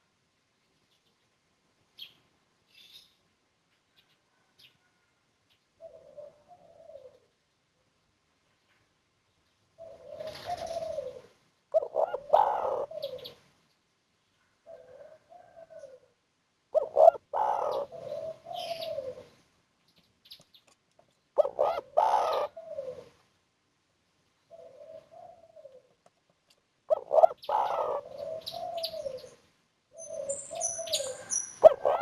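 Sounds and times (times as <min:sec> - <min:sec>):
dove cooing: 0:05.8 - 0:07.3, 0:09.8 - 0:13.4, 0:14.6 - 0:19.4, 0:21.4 - 0:23.2, 0:24.5 - 0:26.0, 0:26.9 - 0:32.0.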